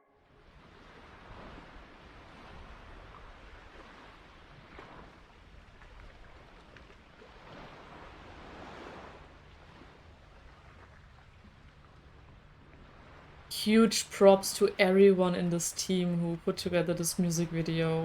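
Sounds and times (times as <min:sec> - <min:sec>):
faint ocean surf: 0:00.0 - 0:18.0.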